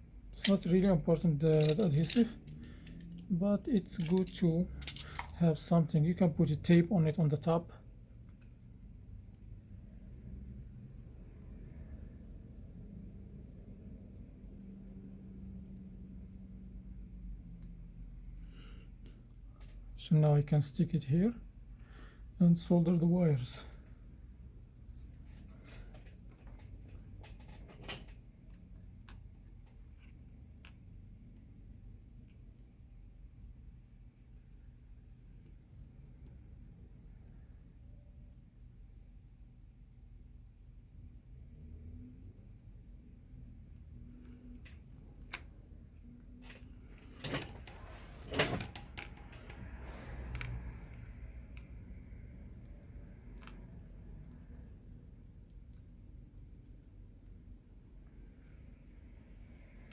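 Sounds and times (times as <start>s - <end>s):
tools handled on work surface: 0.4s - 0.8s, 1.5s - 5.4s.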